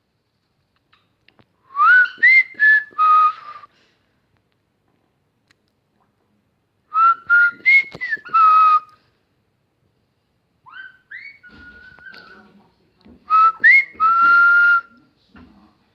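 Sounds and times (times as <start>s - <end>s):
person whistling: 1.7s - 3.7s, 7.0s - 8.9s, 13.3s - 14.9s.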